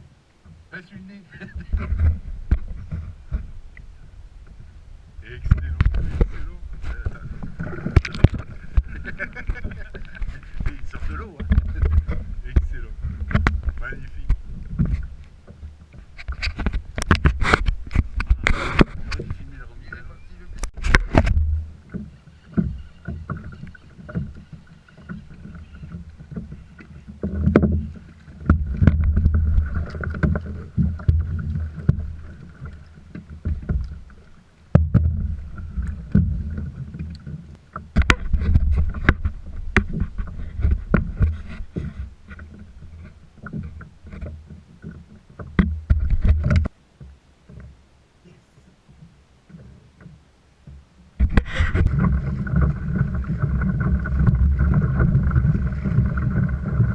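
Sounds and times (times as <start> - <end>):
water and wind rumble: 0.0 - 56.9
knocks on kayak hull: 11.4 - 15.0, 34.7 - 36.6, 45.4 - 46.7.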